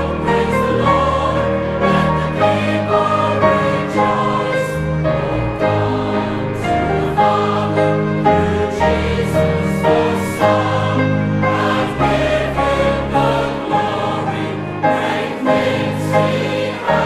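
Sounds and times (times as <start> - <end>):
choir singing sustained notes: 0.0 - 17.0.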